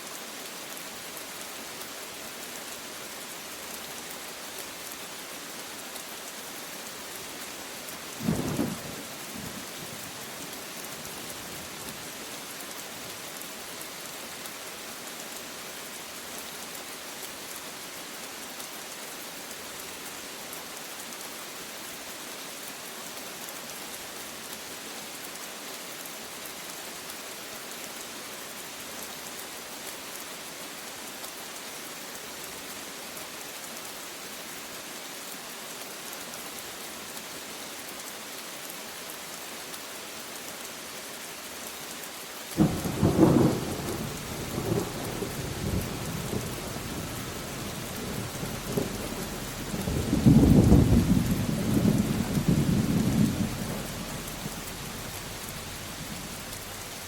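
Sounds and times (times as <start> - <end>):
steady rain falling: 0.0 - 57.0
thunder clap and rumble: 47.6 - 56.7.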